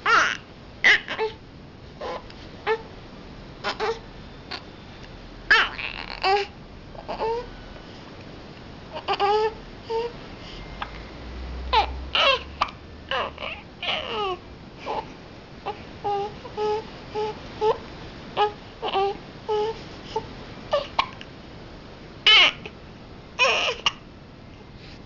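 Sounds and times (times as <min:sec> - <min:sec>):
baby crying: 0:00.0 - 0:01.4, 0:02.0 - 0:02.9, 0:03.6 - 0:04.6, 0:05.5 - 0:07.5, 0:08.9 - 0:10.1, 0:11.7 - 0:15.0, 0:18.4 - 0:19.8, 0:22.3 - 0:22.7, 0:23.4 - 0:24.0
baby babbling and fussing: 0:03.6 - 0:04.6, 0:05.5 - 0:07.5, 0:08.9 - 0:10.6, 0:11.7 - 0:17.8, 0:18.4 - 0:21.2, 0:23.4 - 0:24.0.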